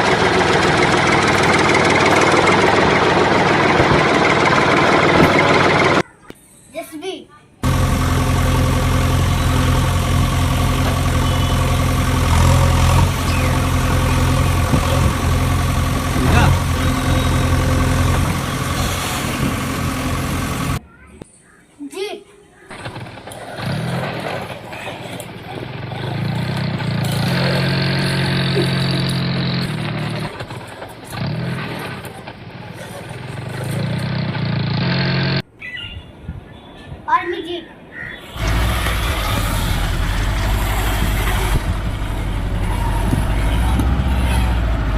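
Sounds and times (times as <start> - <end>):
engine idling rumble: 0.0 - 6.0, 7.6 - 20.8, 38.4 - 44.9.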